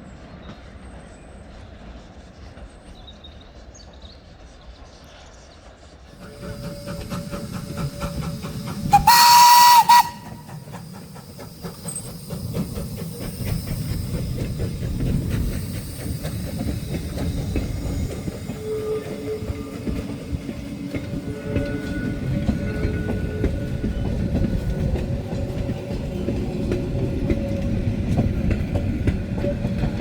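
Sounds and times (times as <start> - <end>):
train rumbling by: 0.0 - 30.0
steam locomotive whistle: 6.2 - 15.6, 16.2 - 25.0
wheels clattering on rails: 6.2 - 30.0.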